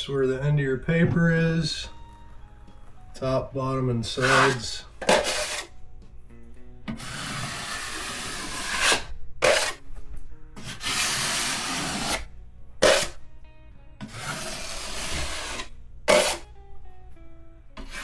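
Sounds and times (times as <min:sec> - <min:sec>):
drywall knife scraping compound: 0:04.1 - 0:05.7, 0:06.9 - 0:09.8, 0:10.6 - 0:13.2, 0:14.0 - 0:16.5, 0:17.8 - 0:18.0.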